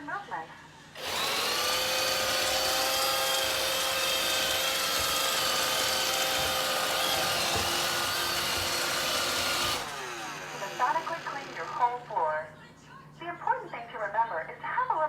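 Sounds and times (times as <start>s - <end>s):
robot vacuum motor whine: 1.0s - 12.2s.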